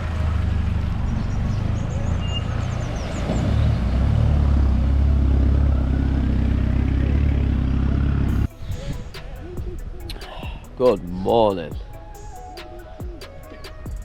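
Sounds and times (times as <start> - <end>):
vehicle engine rumbling: 0.0 - 14.0.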